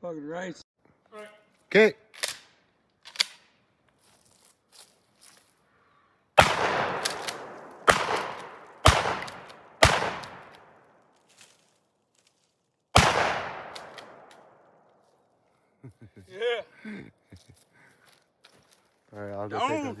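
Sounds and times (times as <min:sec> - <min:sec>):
gunshots with echo: 0:06.4 - 0:10.8, 0:13.0 - 0:14.6.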